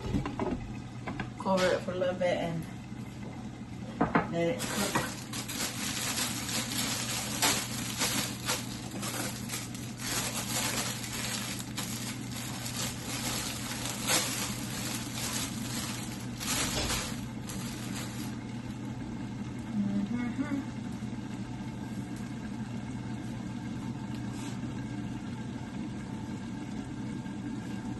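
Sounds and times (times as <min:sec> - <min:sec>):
vegetables sizzling in a pan: 0:04.6 - 0:18.0.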